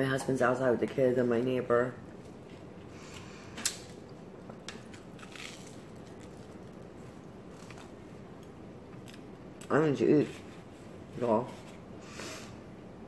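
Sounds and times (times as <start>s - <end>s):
sandwich being chewed: 4.0s - 9.3s.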